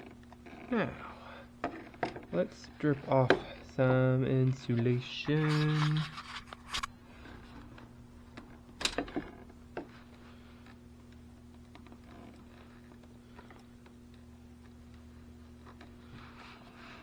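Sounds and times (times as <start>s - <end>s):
steady low hum: 0.0s - 17.0s
knife cutting cable insulation: 5.3s - 6.9s.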